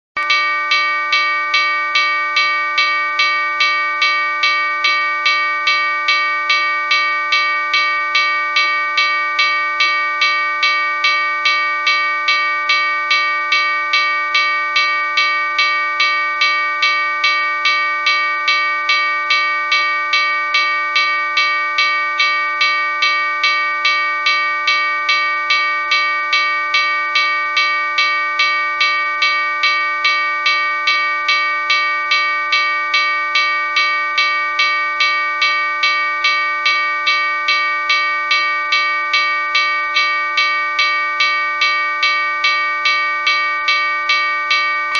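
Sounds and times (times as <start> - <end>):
railroad crossing bell ringing: 0.2 - 44.9.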